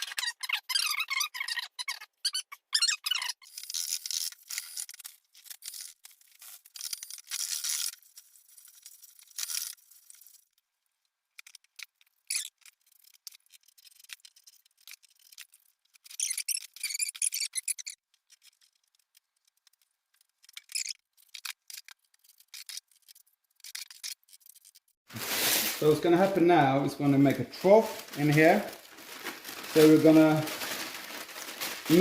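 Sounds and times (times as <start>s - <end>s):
drill bit squealing in steel: 16.1s - 18.0s.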